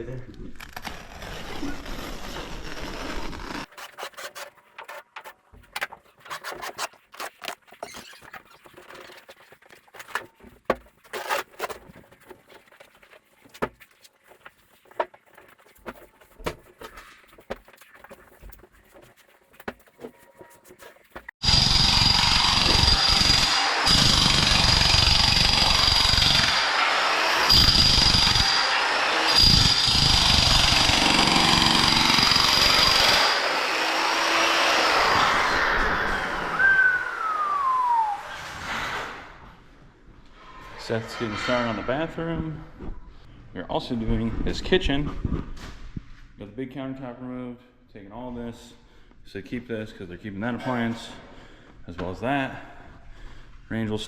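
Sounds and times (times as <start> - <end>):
power tool whining: 21.4 - 39.0.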